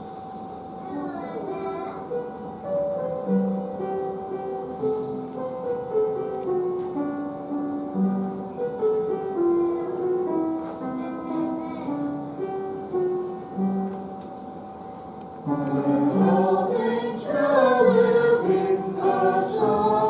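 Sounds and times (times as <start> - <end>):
keyboard playing hymn tune: 0.0 - 20.0.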